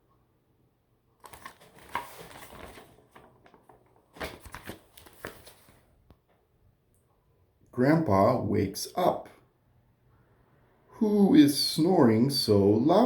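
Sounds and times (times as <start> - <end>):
rustling crinkling noise: 1.2 - 6.4.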